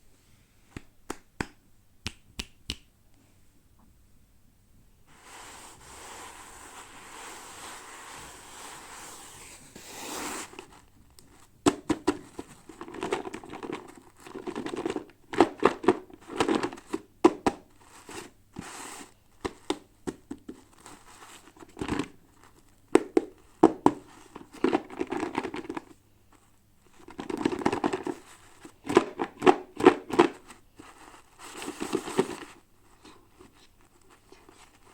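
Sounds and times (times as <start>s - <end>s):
sharp clicks and taps: 0.7s - 2.9s
hiss of rubbing: 5.1s - 10.7s
plastic and paper crinkling: 7.4s - 17.0s.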